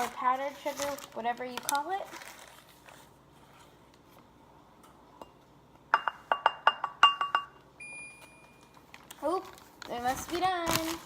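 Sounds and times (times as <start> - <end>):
utensil tapping glass bowl: 5.2 - 7.6.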